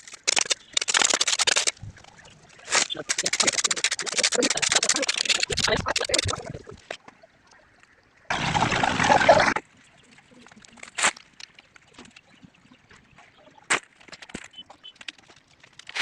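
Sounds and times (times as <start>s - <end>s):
wet concrete pouring: 8.3s - 9.6s.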